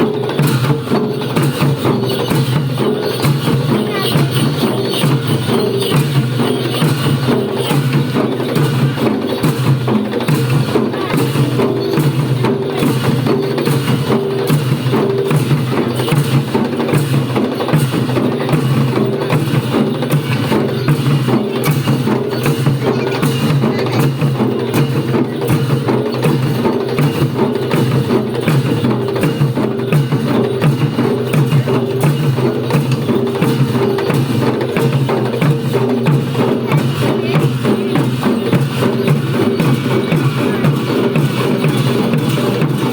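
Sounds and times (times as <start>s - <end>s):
percussion music with drums: 0.0s - 42.9s.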